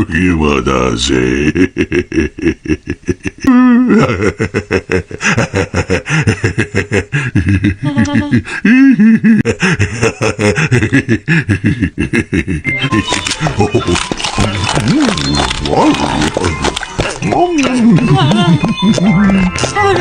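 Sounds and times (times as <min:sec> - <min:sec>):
cartoon character laughing: 0:07.6 - 0:15.1.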